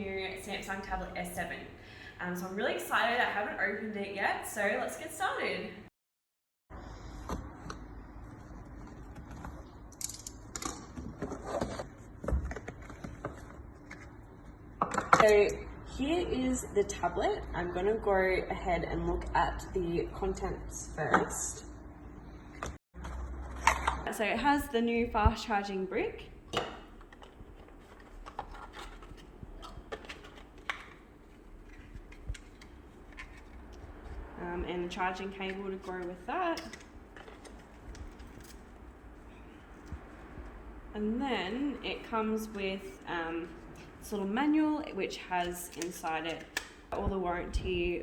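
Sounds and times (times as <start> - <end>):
packaging rustling: 26.9 - 34.3, 35.5 - 40.5.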